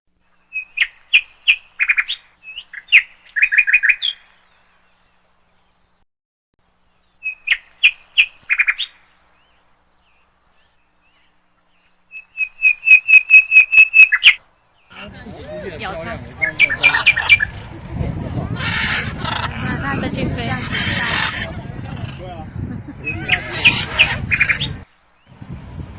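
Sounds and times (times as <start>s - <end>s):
parrot chirping: 12.1s - 14.4s, 16.4s - 17.6s, 18.6s - 21.5s, 23.0s - 24.8s.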